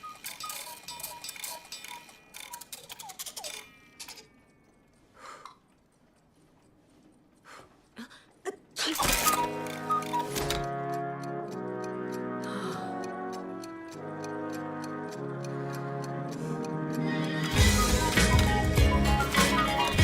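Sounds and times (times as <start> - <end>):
clockwork ticking: 0.0 - 5.0, 9.0 - 20.0
musical tones: 9.0 - 20.0.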